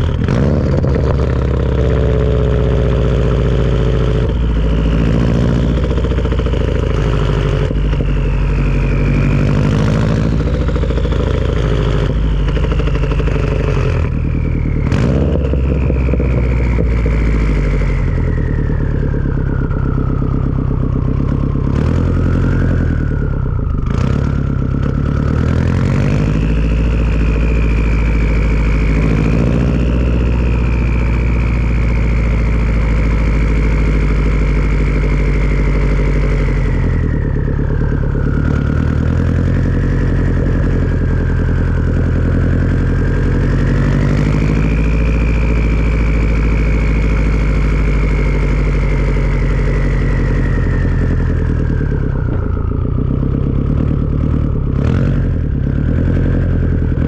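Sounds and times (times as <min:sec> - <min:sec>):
high turbo whistle: 0:00.0 - 0:54.6
turbocharged car engine: 0:00.0 - 0:57.0.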